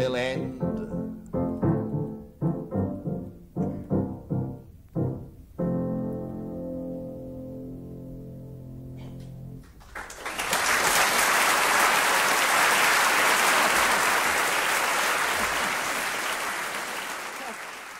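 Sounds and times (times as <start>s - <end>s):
piano chord: 0.0s - 9.7s
audience applause: 9.6s - 17.9s.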